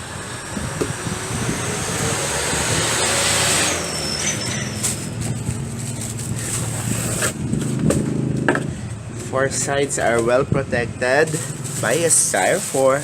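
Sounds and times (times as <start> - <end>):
packing scraping rustle: 3.9 - 8.5, 11.2 - 13.0
knocks and creaks: 4.2 - 9.4.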